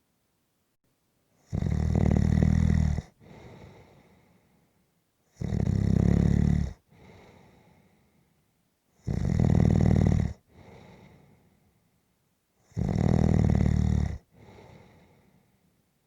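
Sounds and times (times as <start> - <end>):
rattling snores: 1.5 - 3.2, 5.4 - 6.8, 9.0 - 10.4, 12.7 - 14.3
quiet breath: 3.1 - 5.0, 6.7 - 9.0, 10.4 - 12.1, 14.2 - 16.0.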